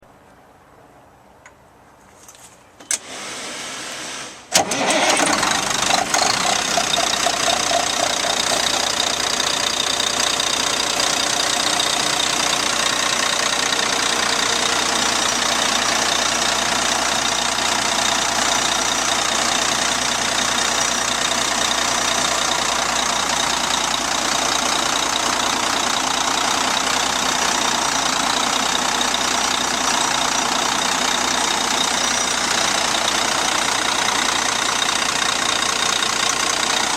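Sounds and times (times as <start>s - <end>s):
starter cranking: 4.6s - 26.9s
diesel engine running: 4.6s - 36.9s.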